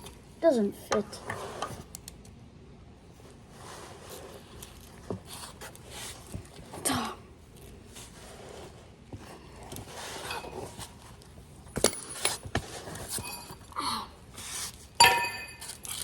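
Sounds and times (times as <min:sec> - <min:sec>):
ringing metallic clink: 0:15.0 - 0:16.0.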